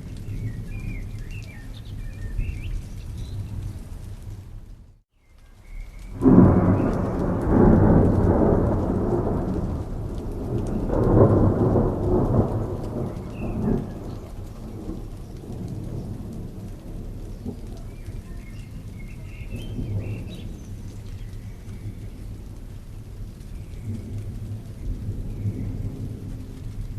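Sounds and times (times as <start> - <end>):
thunder rumbling: 0.0 - 5.0, 5.6 - 26.9
steady rain: 0.0 - 26.9.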